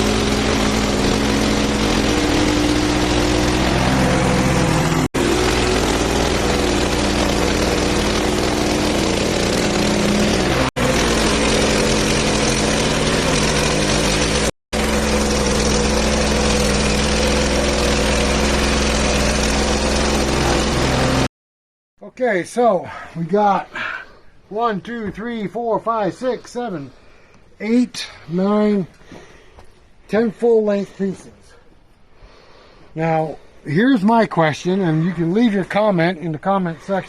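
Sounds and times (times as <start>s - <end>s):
band blade cutting log: 0.0s - 21.3s
sawmill engine running: 0.0s - 21.3s.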